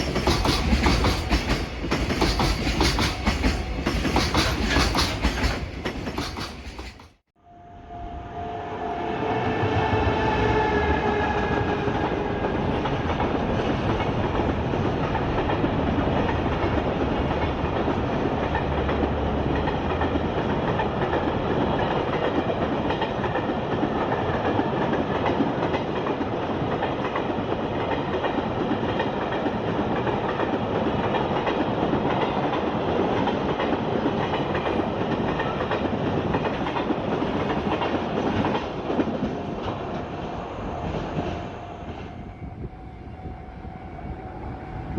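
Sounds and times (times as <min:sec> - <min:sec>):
freight train rumbling past: 0:00.0 - 0:44.9
locomotive whine: 0:07.4 - 0:17.3, 0:37.2 - 0:44.9.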